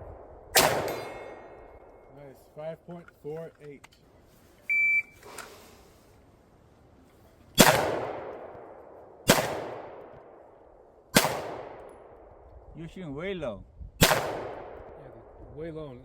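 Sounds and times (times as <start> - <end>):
pistol shots with echo: 0.0 - 2.1, 7.6 - 10.5, 11.1 - 12.4, 14.0 - 15.4
shot timer beep: 4.7 - 5.2.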